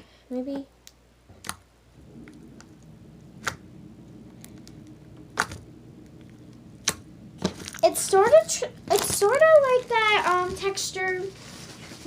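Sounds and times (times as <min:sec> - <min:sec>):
slime squishing: 0:01.3 - 0:12.0
sharp clicks or pops: 0:01.4 - 0:03.7, 0:04.4 - 0:07.7.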